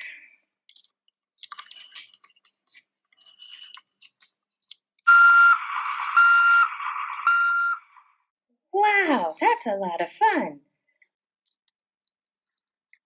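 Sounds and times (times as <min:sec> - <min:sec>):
toy reverse-warning beeps: 0:05.1 - 0:08.1.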